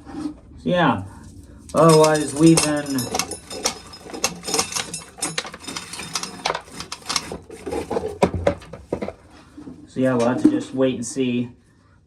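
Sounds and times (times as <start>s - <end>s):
corn kernels clattering: 1.7s - 9.2s.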